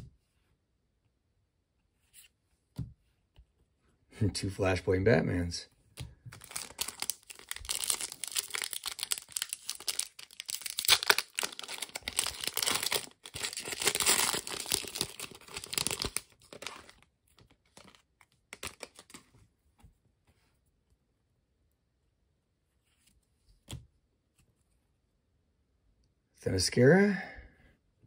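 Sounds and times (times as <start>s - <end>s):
wrapper tearing and crinkling: 6.3s - 17.0s, 17.7s - 19.2s.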